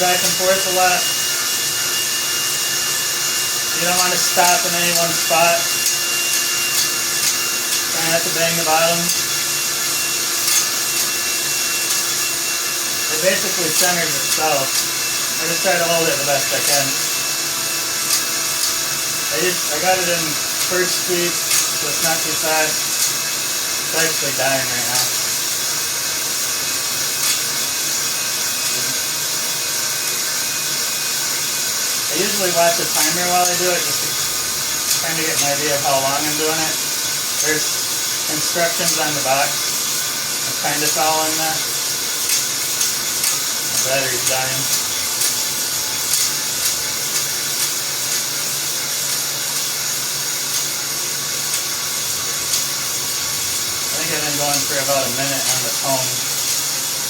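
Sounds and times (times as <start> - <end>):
drill motor hum: 0.0 - 57.0
hone stones scraping cylinder wall: 32.0 - 41.6.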